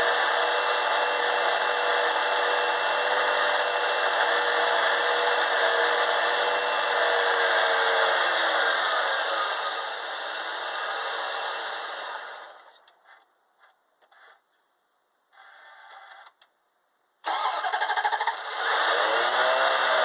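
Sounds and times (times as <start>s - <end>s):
starter motor cranking: 17.2s - 20.0s.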